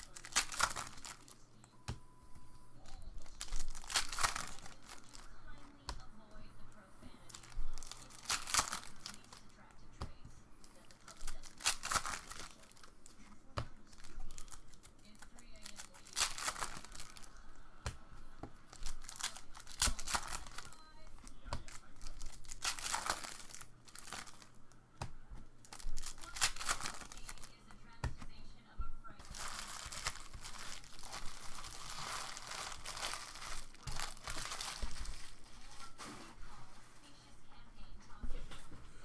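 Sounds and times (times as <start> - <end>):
card pack wrappers tearing: 0.0 - 1.6, 2.8 - 6.0, 7.3 - 9.6, 10.6 - 17.6, 18.6 - 24.6, 25.6 - 27.6, 29.2 - 35.9.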